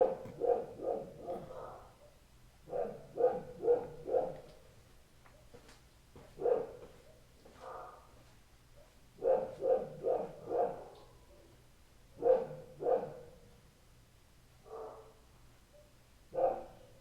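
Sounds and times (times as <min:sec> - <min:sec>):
dog barking: 0:00.0 - 0:04.7, 0:06.3 - 0:08.2, 0:08.8 - 0:11.5, 0:12.2 - 0:13.5, 0:14.6 - 0:17.0.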